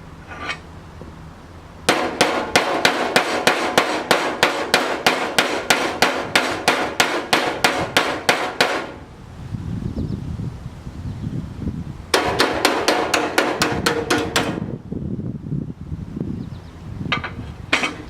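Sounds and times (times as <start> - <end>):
hammer on sheet steel: 1.9 - 9.0, 12.1 - 14.7.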